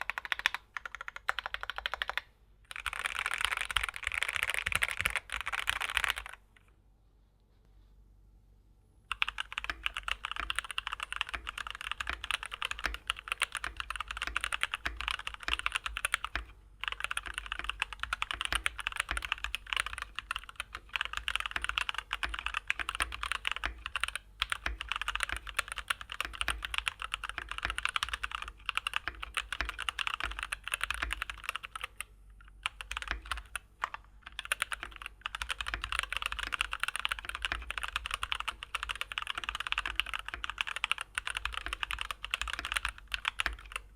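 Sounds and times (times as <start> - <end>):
mechanical keyboard typing: 0.0 - 6.4, 9.1 - 43.9.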